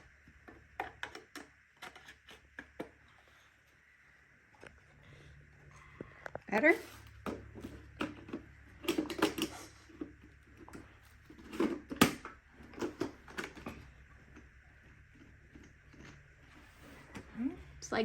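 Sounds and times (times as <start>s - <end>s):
plastic parts clicking and knocking: 0.2s - 3.0s, 7.2s - 13.9s.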